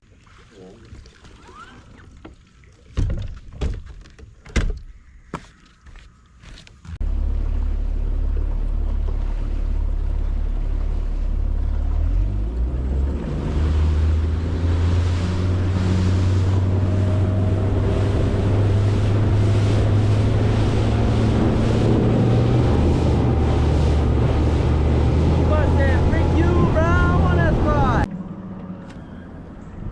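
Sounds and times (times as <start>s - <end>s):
motorboat engine: 6.8s - 29.9s
water rushing: 6.9s - 28.8s
wind on microphone: 13.4s - 28.1s.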